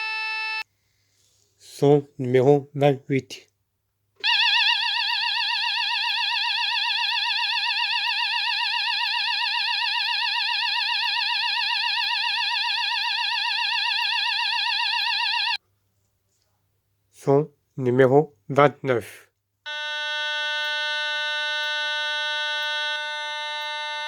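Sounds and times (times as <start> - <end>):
electronic fire alarm warbling: 4.2 - 15.6, 19.7 - 24.0.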